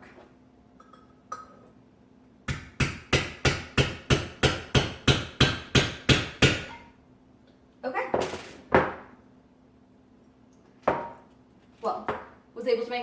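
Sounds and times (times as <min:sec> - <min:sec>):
hammer striking nail through metal lid: 0:02.5 - 0:06.8.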